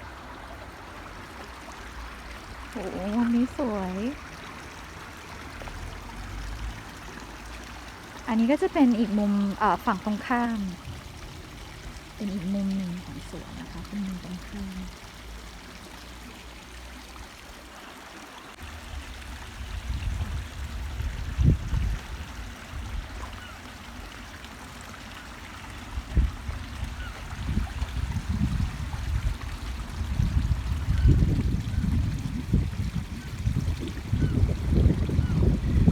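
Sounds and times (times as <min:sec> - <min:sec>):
faint outdoor hiss: 0:00.0 - 0:28.4
wind buffeting microphone: 0:18.6 - 0:23.4, 0:25.7 - 0:35.9.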